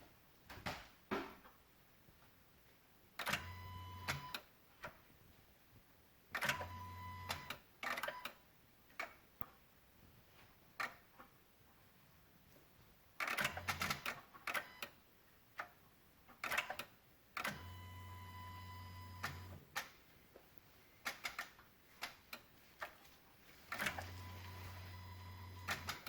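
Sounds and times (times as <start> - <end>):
low electrical hum: 22.5 - 26.0.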